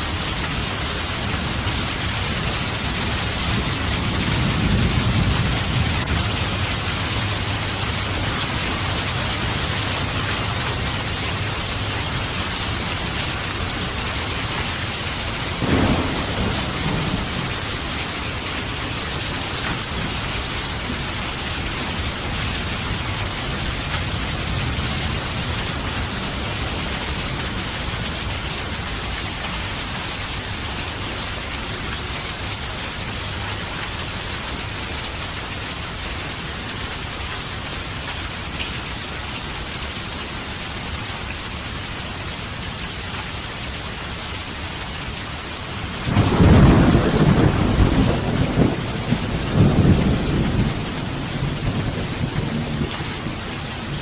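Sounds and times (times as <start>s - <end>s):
steady rain falling: 0.0s - 54.0s
loud rumble of thunder: 1.1s - 28.1s, 45.9s - 54.0s.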